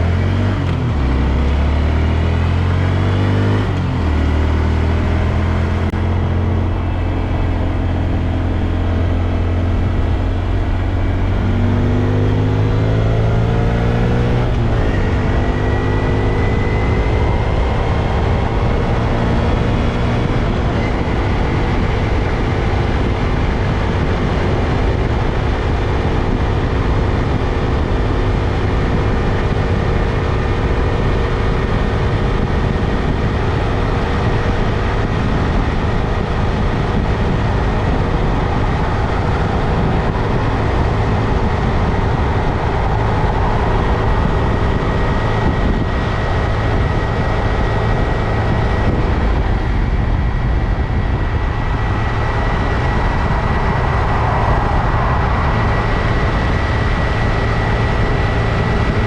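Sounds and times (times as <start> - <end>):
motorcycle engine running: 0.0 - 59.0
riding noise: 31.0 - 59.0.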